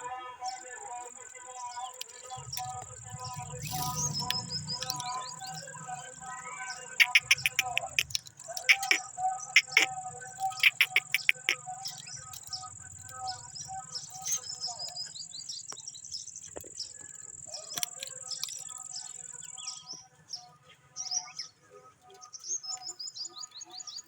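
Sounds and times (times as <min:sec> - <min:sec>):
high-pitched whine: 0:02.4 - 0:06.3
parrots chirping: 0:02.4 - 0:12.5.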